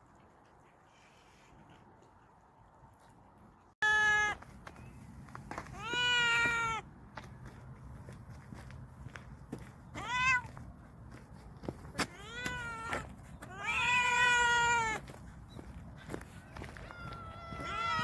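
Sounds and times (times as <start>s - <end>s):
cat meowing: 5.7s - 6.8s, 10.0s - 10.5s, 12.1s - 15.0s, 16.9s - 18.0s.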